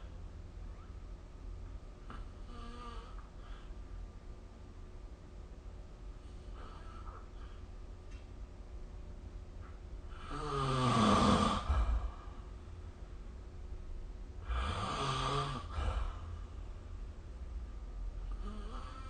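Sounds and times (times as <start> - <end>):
person snoring: 10.1 - 12.2, 14.4 - 16.3, 18.3 - 19.0.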